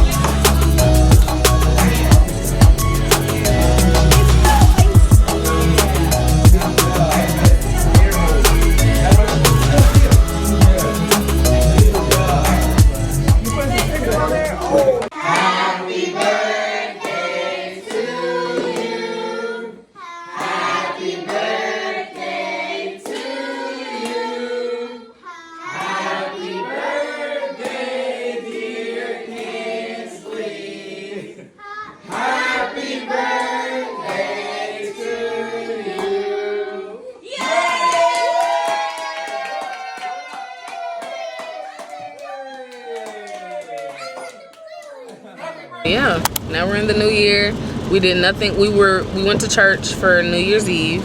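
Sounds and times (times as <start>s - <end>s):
choir singing: 0.0s - 37.1s.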